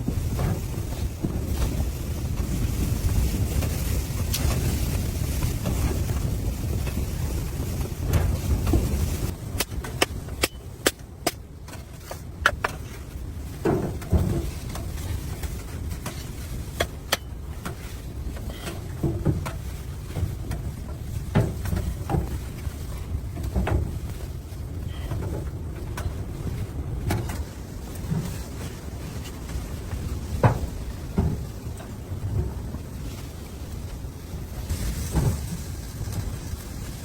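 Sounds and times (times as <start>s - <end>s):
wind buffeting microphone: 0.0s - 37.0s.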